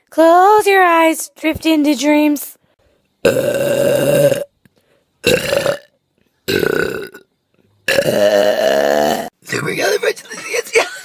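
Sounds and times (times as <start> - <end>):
person burping loudly: 3.2 - 4.6, 5.2 - 9.4.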